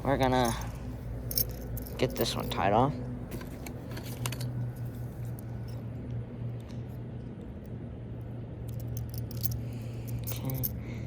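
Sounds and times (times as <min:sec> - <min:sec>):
steady low hum: 0:00.0 - 0:11.0
fishing tackle clicks and rustles: 0:03.3 - 0:05.9.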